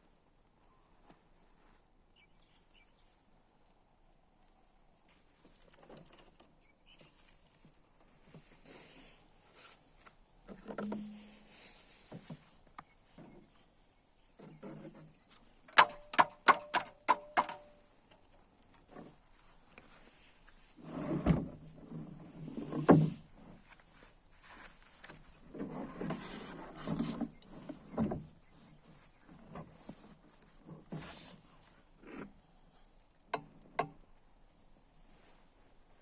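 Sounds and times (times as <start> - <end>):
knocks and scrapes on metal: 10.5 - 11.4.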